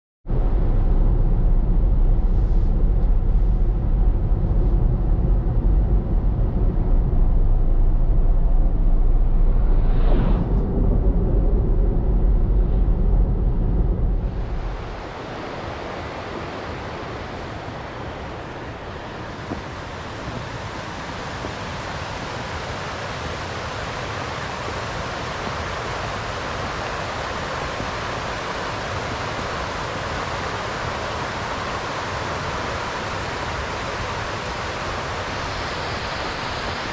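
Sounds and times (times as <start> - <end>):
deep low rumble: 0.3 - 15.1
waterfall rushing hiss: 14.4 - 36.9.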